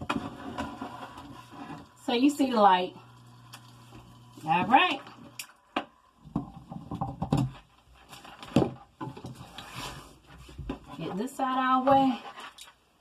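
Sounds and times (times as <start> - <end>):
rustling: 7.5 - 13.0.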